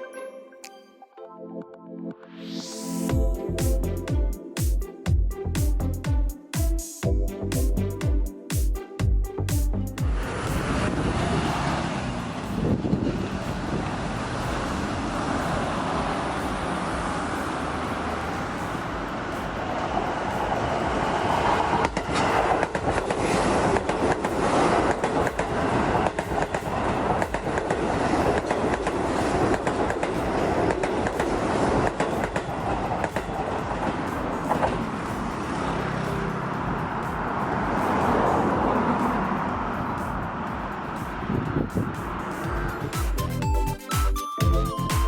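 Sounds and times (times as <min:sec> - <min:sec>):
electric train passing: 0:07.3 - 0:43.4
wheels clicking over rail joints: 0:10.1 - 0:42.8.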